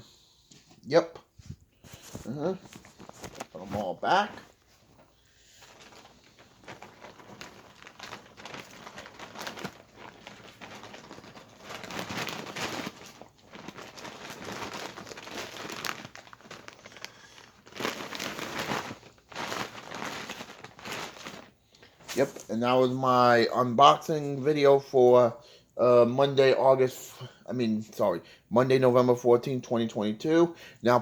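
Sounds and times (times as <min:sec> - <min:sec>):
comic books rustling and crinkling: 0:01.5 - 0:23.9.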